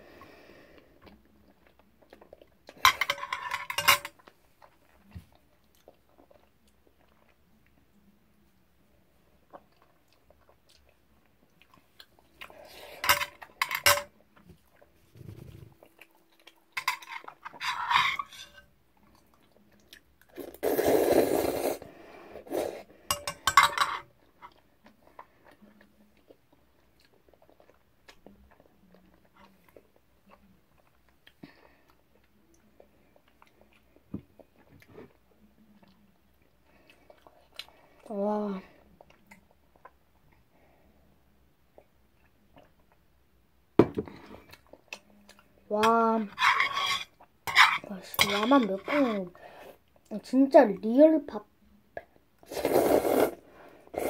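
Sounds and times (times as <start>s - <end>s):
person slurping noodles: 20.4s - 22.8s, 52.4s - 54.0s.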